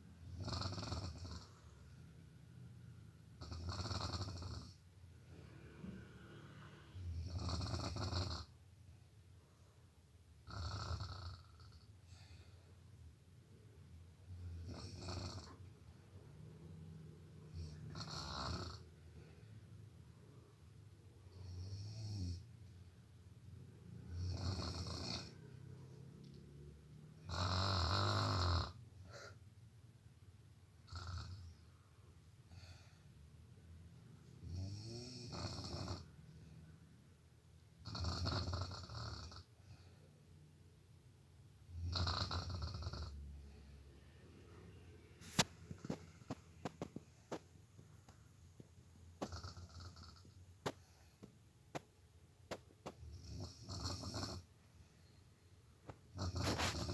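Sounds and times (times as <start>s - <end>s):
person snoring: 0.3s - 1.8s, 3.4s - 4.8s, 5.4s - 8.5s, 17.5s - 19.0s, 24.1s - 25.7s, 27.2s - 29.4s, 56.2s - 56.9s.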